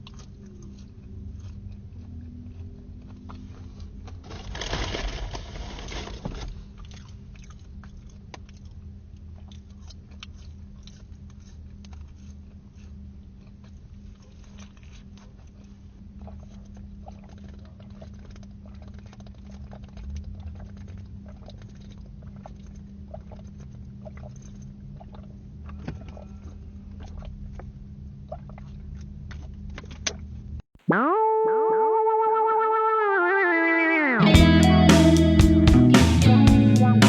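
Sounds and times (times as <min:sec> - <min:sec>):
chewing with crunches: 0:00.0 - 0:30.6
synthesizer sting: 0:30.9 - 0:34.6.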